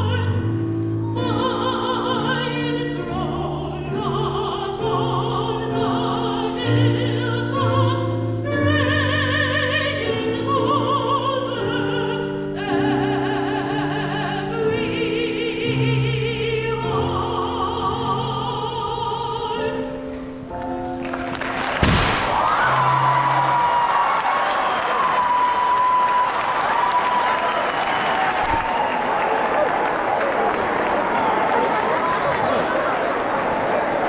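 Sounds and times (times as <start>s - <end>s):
operatic singing with vibrato: 0.0s - 20.2s
crowd noise: 20.6s - 34.0s
confetti cannons blast: 21.6s - 23.2s.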